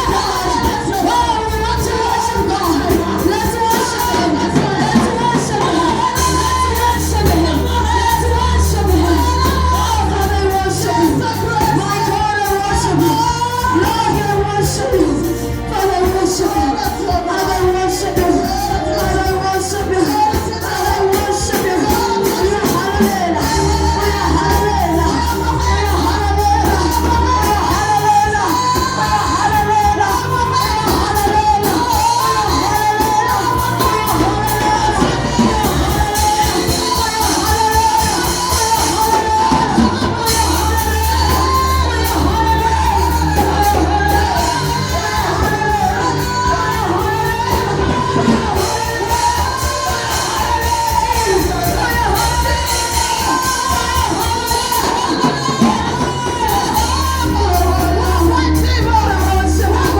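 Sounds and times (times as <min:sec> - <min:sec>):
live band with heavy bass: 0:00.0 - 0:59.9
voices singing worship song: 0:00.0 - 0:59.9.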